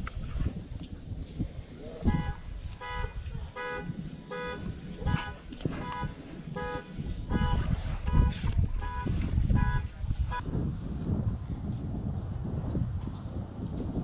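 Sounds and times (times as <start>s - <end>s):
low rumble of wind: 0.0s - 14.0s
short flat honk: 2.0s - 9.9s.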